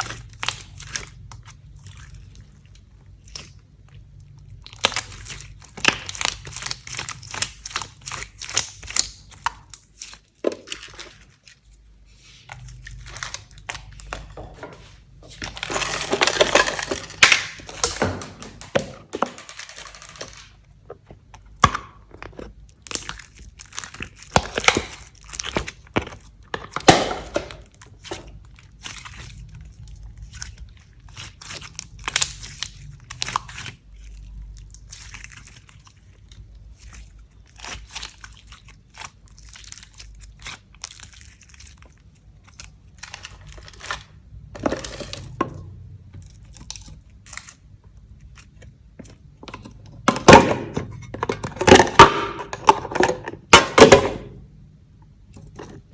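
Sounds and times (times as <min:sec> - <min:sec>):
slime crackling and popping: 0:00.0 - 0:11.7, 0:15.4 - 0:17.8, 0:20.4 - 0:49.3.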